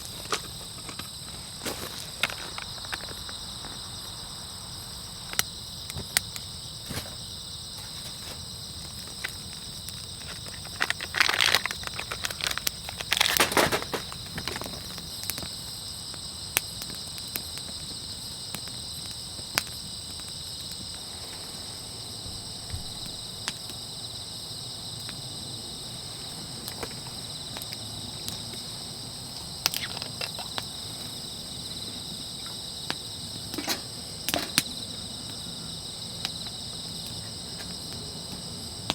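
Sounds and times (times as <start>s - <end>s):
handling clicks and rustles: 0.0s - 3.8s, 5.4s - 15.4s, 33.5s - 34.8s
night insects chorus: 0.0s - 38.9s.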